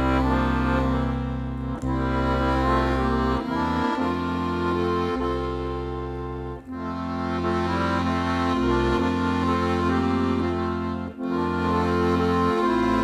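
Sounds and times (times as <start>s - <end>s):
accordion playing slow tune: 0.0s - 13.0s.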